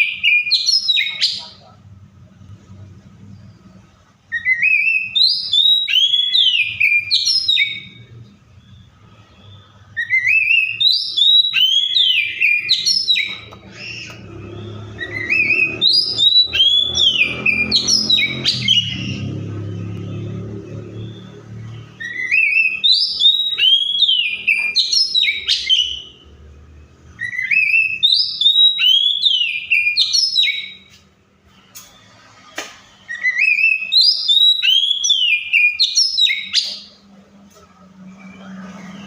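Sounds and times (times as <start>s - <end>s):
magpie-robin singing: 0.0s - 1.6s, 4.3s - 19.5s, 20.2s - 26.3s, 27.1s - 31.0s, 33.0s - 37.0s.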